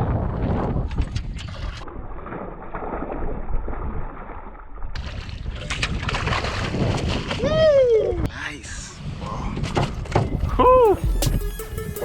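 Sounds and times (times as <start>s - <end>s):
wind buffeting microphone: 0.0s - 1.9s, 5.0s - 8.2s
water around a boat: 0.0s - 11.0s.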